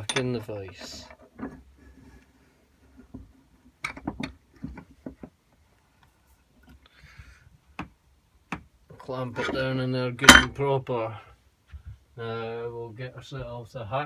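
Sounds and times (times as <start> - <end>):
metal pipe knocking and clinking: 0.0 - 0.5, 10.3 - 10.6.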